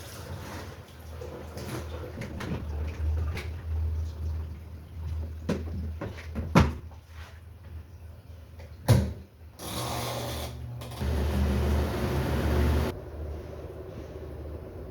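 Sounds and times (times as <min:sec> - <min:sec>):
washing machine humming: 0:00.0 - 0:07.1, 0:10.4 - 0:14.9.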